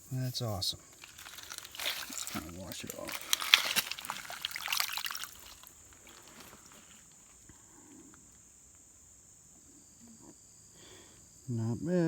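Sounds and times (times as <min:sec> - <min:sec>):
high insect drone: 0:00.0 - 0:12.0
water splashing: 0:01.0 - 0:06.7.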